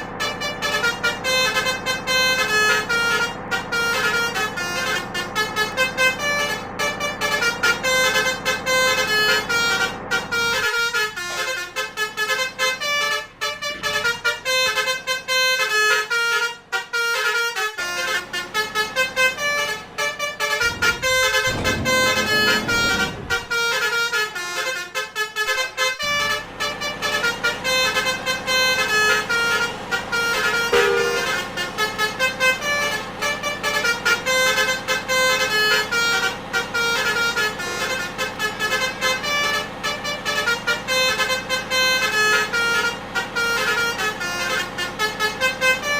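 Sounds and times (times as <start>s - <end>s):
musical bus horns: 0.0s - 45.9s
low rushing sound: 20.6s - 23.7s.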